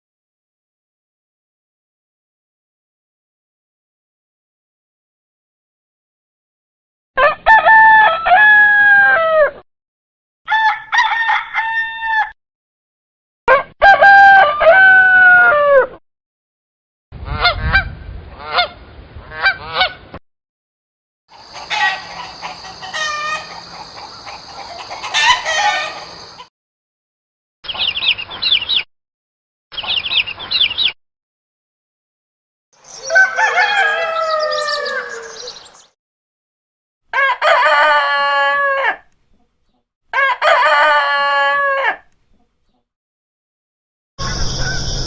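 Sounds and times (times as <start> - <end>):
high-pitched chicken calls: 10.5 - 12.4, 21.3 - 26.5, 32.8 - 35.9, 37.1 - 39.2, 40.2 - 42.2, 44.2 - 45.0
roosters crowing: 10.5 - 12.4, 21.3 - 26.4, 32.8 - 35.9, 37.2 - 39.1, 40.2 - 42.1
hens clucking and calling: 21.3 - 26.5, 32.8 - 35.9, 37.2 - 39.0, 40.2 - 42.0.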